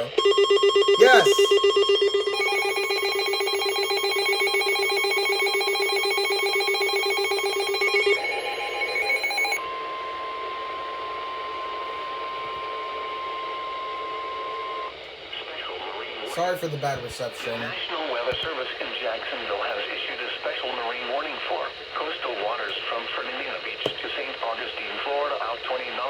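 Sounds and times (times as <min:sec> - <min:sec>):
steady warning alert tone: 0:00.0 - 0:09.6
harsh pulsing alarm: 0:00.0 - 0:14.9
radio static: 0:15.3 - 0:26.0.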